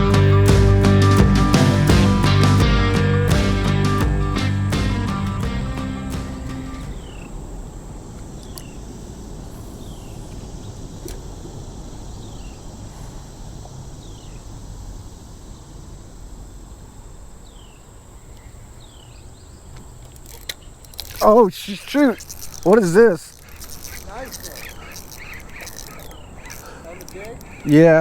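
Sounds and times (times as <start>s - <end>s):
high insect drone: 0.0s - 28.0s
low outdoor noise: 0.0s - 28.0s
faint clicks: 19.7s - 27.8s
short falling bird chirp: 23.3s - 27.7s.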